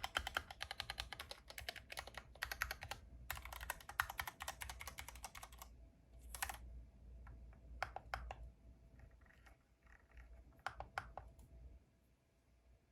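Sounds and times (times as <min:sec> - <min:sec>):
mechanical keyboard keystrokes: 0:00.0 - 0:05.7, 0:06.3 - 0:06.6.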